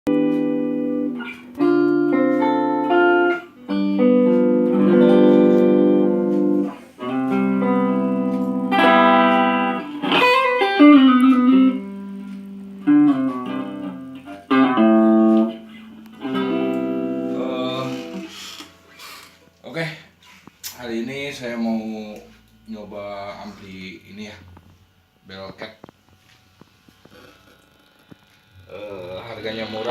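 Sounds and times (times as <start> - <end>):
electric guitar through small amplifier: 0.1 - 19.6.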